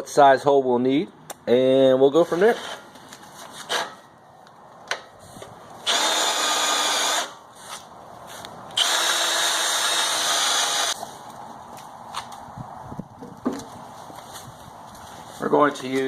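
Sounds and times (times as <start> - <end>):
power drill boring sheet metal: 5.8 - 7.4, 8.8 - 11.0.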